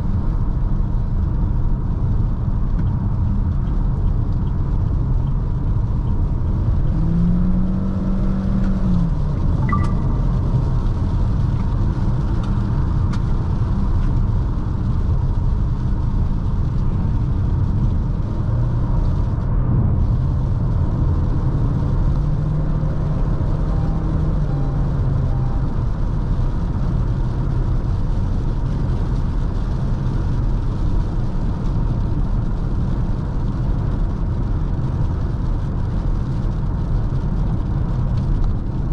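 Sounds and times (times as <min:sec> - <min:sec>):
car engine: 0:00.0 - 0:38.9
road and tyre noise: 0:00.0 - 0:38.9
low hum: 0:06.0 - 0:13.8.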